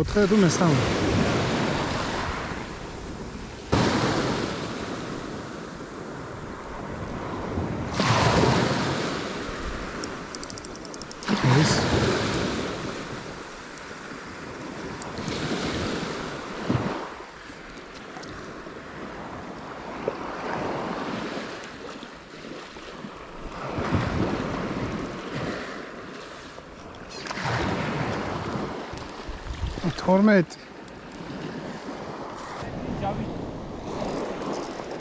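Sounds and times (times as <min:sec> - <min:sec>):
sea waves washing in: 0:00.0 - 0:35.0
wind buffeting microphone: 0:00.8 - 0:17.3, 0:27.6 - 0:29.9.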